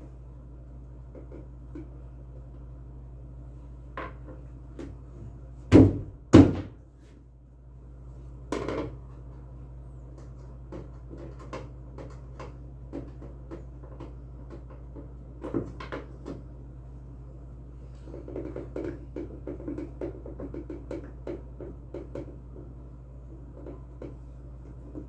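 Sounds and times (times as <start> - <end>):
steady low hum: 0.0 - 25.0
knocks on washing machine: 5.7 - 6.8.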